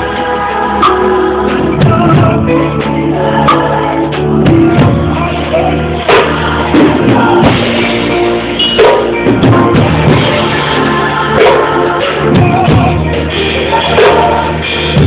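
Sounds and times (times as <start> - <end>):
praise music with singing: 0.0 - 15.0
sharp drum hits: 8.6 - 10.7.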